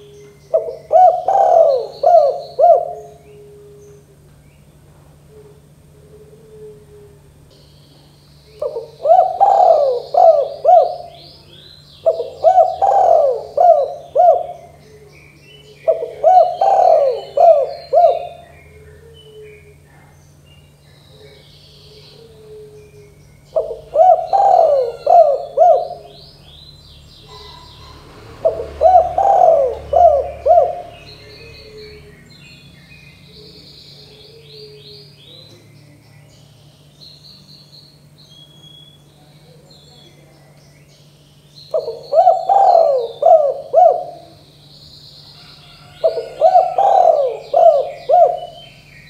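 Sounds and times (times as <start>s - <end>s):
dove cooing: 0.0s - 4.3s, 4.9s - 7.6s, 8.6s - 20.1s, 20.8s - 32.3s, 33.2s - 36.0s, 41.7s - 44.6s, 45.3s - 48.9s.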